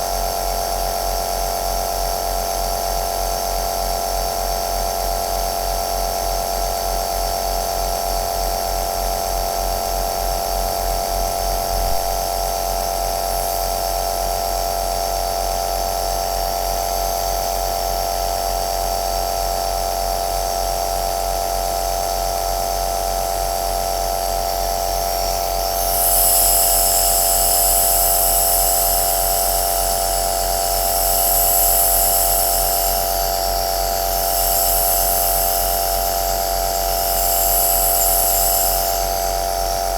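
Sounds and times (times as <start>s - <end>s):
nebulizer buzzing hum: 25.0s - 39.6s.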